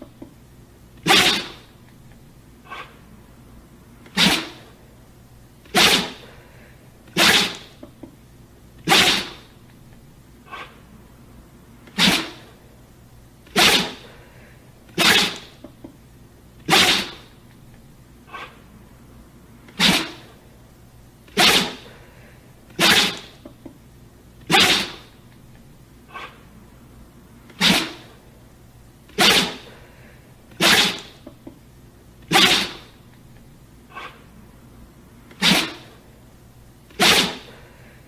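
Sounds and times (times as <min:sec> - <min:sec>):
dog sneezing: 0:01.0 - 0:01.8, 0:02.6 - 0:03.0, 0:04.0 - 0:04.8, 0:05.6 - 0:07.9, 0:08.8 - 0:09.6, 0:10.5 - 0:10.8, 0:11.8 - 0:12.6, 0:13.4 - 0:15.6, 0:16.6 - 0:17.4, 0:18.3 - 0:18.6, 0:19.7 - 0:20.4, 0:21.3 - 0:23.5, 0:24.4 - 0:25.2, 0:26.1 - 0:26.4, 0:27.5 - 0:28.2, 0:29.1 - 0:31.3, 0:32.3 - 0:33.0, 0:33.9 - 0:34.3, 0:35.3 - 0:36.0, 0:36.9 - 0:38.0.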